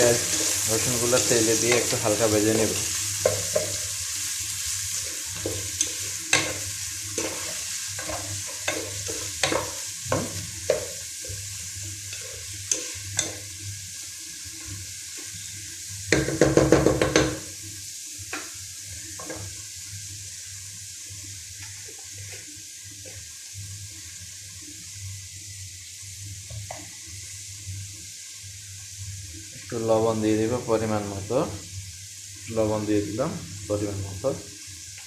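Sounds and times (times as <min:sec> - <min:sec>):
spatula scraping a pot: 0:00.0 - 0:03.9, 0:04.9 - 0:13.4
onion and garlic sizzling in oil: 0:00.0 - 0:35.0.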